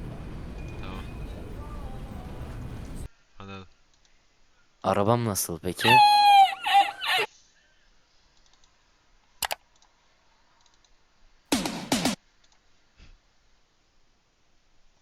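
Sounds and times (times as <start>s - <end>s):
computer mouse and keyboard clicks: 9.4s - 10.0s.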